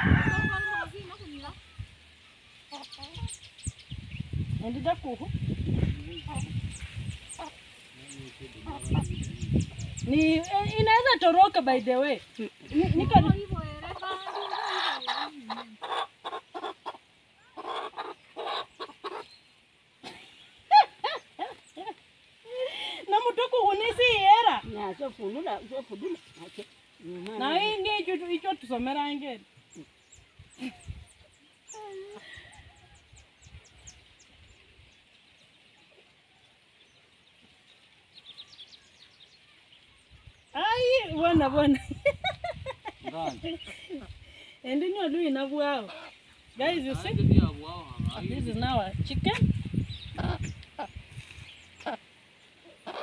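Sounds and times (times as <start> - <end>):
chicken squawking: 8.6 - 9.3, 13.8 - 19.3, 45.8 - 46.2, 50.1 - 51.0, 51.8 - 53.0.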